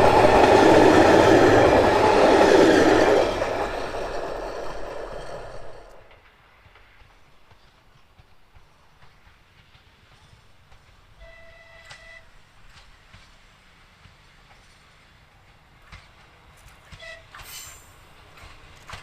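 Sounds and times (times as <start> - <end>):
diesel train passing: 0.0 - 11.2.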